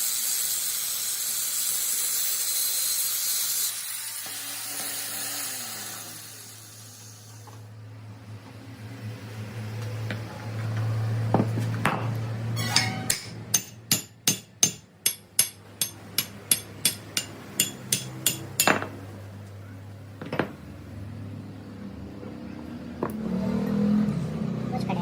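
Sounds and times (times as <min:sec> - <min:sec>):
hammer striking metal: 0:11.8 - 0:19.0.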